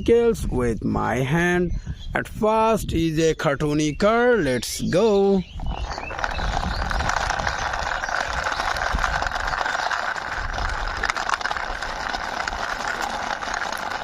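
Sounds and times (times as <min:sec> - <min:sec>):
toy car wheels rolling: 0:04.7 - 0:14.0.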